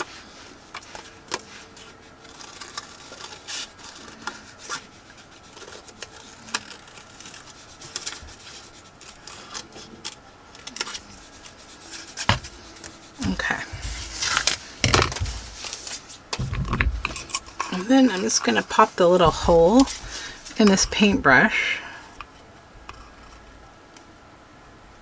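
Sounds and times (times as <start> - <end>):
paper rustling: 0.0 - 22.0
scissors cutting paper: 0.9 - 16.1.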